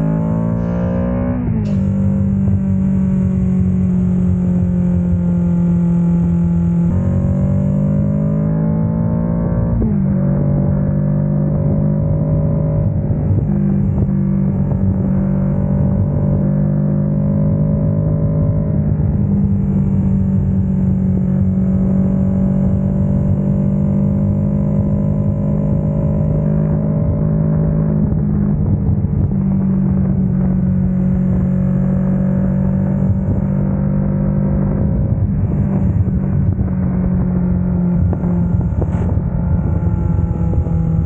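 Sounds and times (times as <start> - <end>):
motorcycle engine running: 1.6 - 41.0.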